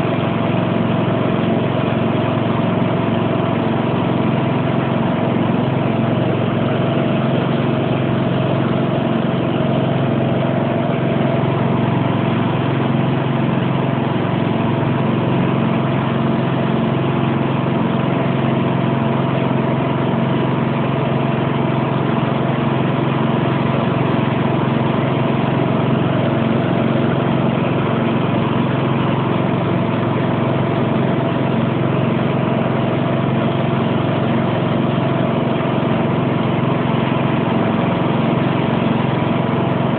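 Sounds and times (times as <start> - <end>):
garden tractor engine running: 0.0 - 39.9.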